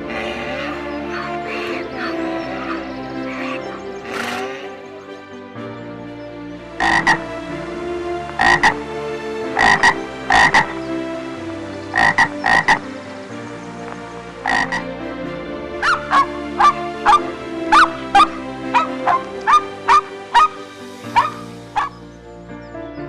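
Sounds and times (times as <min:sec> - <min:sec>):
frog croaking: 0:00.0 - 0:05.2, 0:06.8 - 0:07.3, 0:08.4 - 0:08.8, 0:09.5 - 0:10.7, 0:11.9 - 0:12.9, 0:14.4 - 0:14.9, 0:17.8 - 0:22.0
background music: 0:00.0 - 0:23.0
frog calls with bending pitch: 0:00.1 - 0:04.9.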